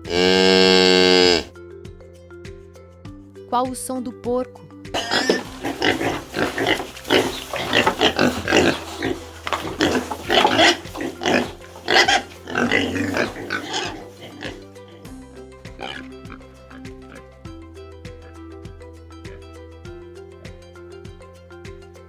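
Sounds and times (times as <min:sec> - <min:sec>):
pig grunting: 0:00.0 - 0:01.5, 0:05.0 - 0:15.1, 0:15.7 - 0:17.3
background music: 0:00.0 - 0:22.0.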